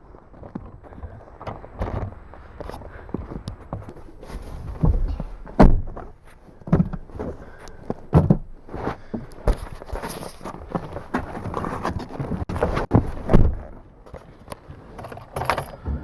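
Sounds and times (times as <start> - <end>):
thumps of people in vehicle: 0.4 - 14.2.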